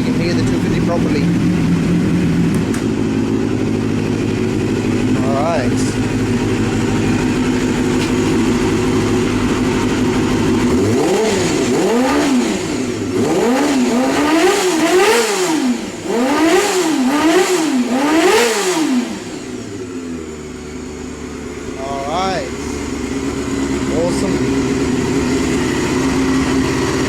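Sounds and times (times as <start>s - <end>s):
motorcycle engine revving: 0.0s - 27.0s.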